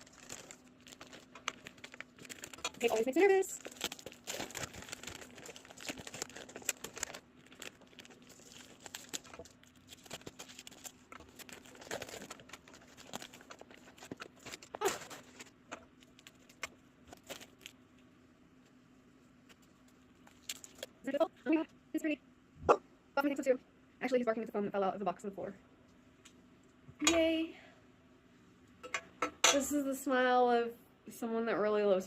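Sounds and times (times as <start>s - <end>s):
packing material crinkling: 0.0s - 17.8s, 19.5s - 21.0s.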